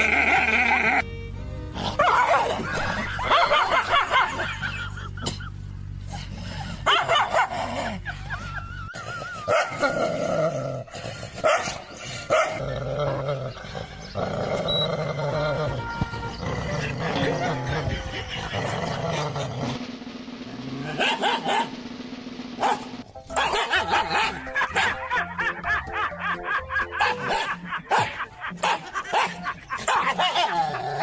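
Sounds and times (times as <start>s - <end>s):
background music: 0.2s - 4.5s, 9.4s - 19.7s, 22.4s - 31.0s
dog barking and whining: 1.8s - 4.1s, 6.8s - 7.9s, 9.4s - 10.2s, 11.4s - 17.8s, 20.9s - 21.8s, 22.6s - 25.0s, 27.0s - 31.0s.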